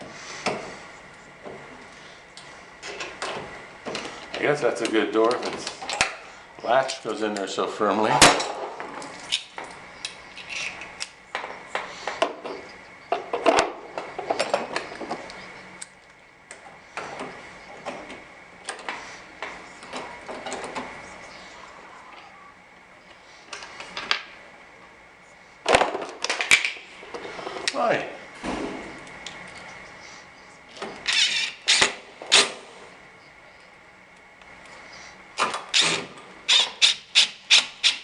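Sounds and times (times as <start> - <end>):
tools being handled: 8.3 - 15.9, 30.7 - 32.4.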